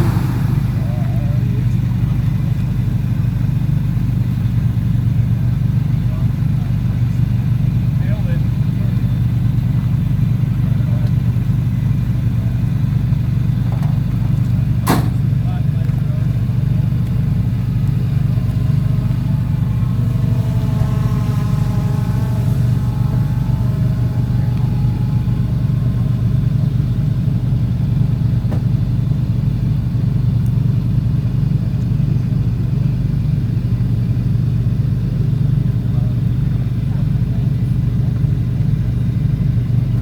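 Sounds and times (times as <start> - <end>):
higher engine tone: 0.0 - 40.0
vehicle engine rumbling at low revs: 0.0 - 40.0.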